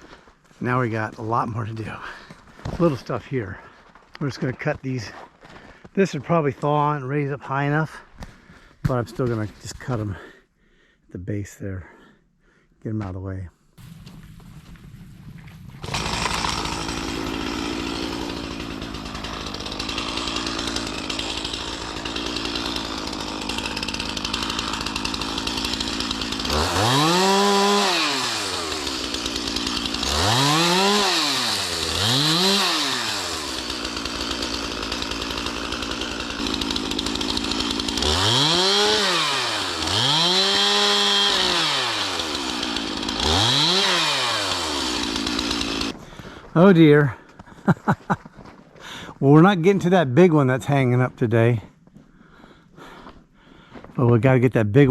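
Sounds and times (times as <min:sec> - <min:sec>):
chainsaw revving: 0:13.8 - 0:46.0.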